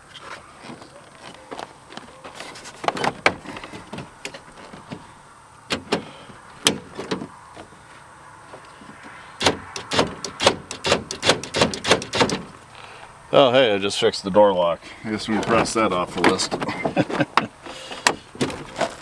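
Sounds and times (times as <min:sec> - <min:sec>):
clicks and knocks on truck door: 0:05.7 - 0:07.3, 0:09.4 - 0:12.6.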